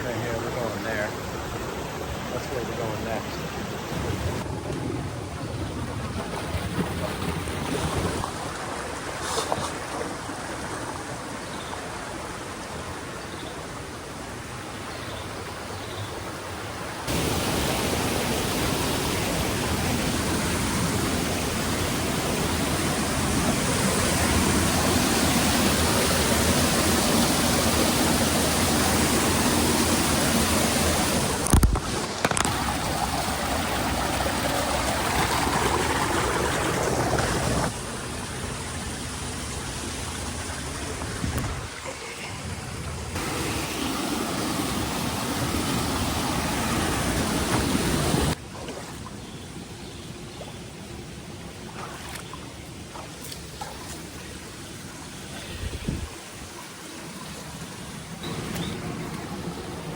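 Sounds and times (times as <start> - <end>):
stream water rushing: 0.0 - 49.7, 50.4 - 59.9.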